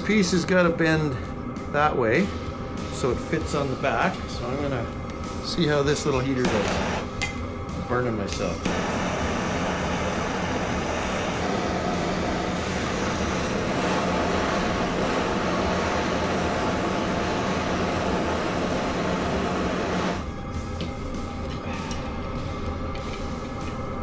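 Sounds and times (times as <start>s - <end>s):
heat gun humming: 6.4s - 7.3s, 8.6s - 20.3s.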